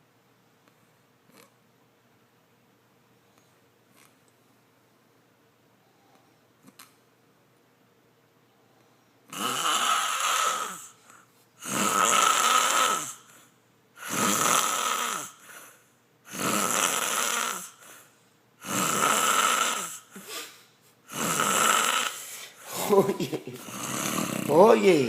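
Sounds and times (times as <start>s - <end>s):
chicken snoring: 9.3s - 11.0s, 11.6s - 13.3s, 14.0s - 15.7s, 16.3s - 18.0s, 18.6s - 20.1s, 21.1s - 22.2s, 23.6s - 24.9s.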